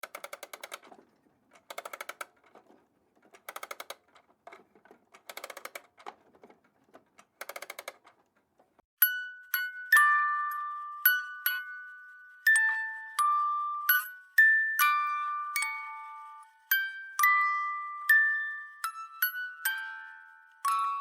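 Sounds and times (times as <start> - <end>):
music box key ratchet clicking: 0.0 - 0.8, 1.6 - 2.3, 3.4 - 4.0, 5.2 - 5.8, 7.4 - 8.0
music box plucked notes: 9.0 - 21.0.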